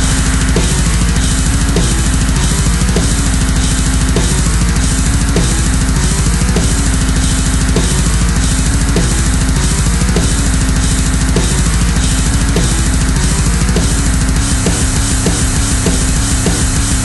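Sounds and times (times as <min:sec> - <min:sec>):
heavy metal music: 0:00.0 - 0:17.0.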